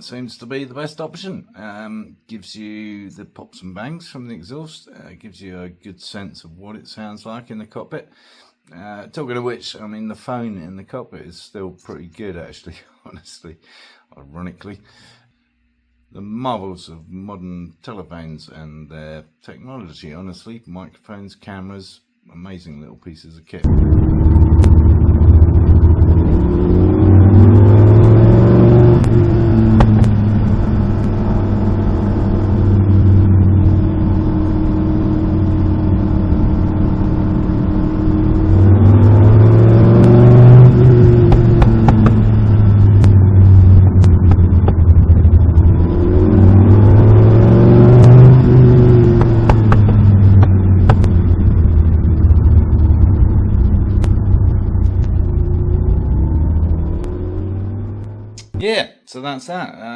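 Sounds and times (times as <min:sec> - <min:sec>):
car engine accelerating: 0:23.6 - 0:58.6.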